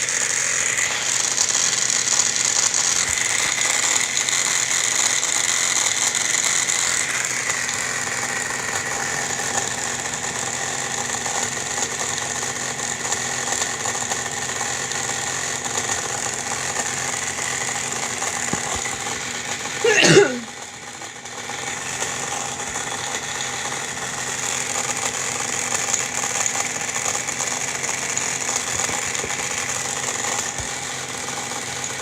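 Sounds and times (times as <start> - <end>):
air conditioner whirring: 19.4 - 20.6.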